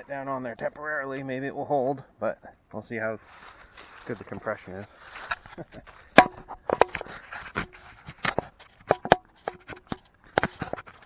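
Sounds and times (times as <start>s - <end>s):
sharp knocks and clicks: 6.2s - 11.0s.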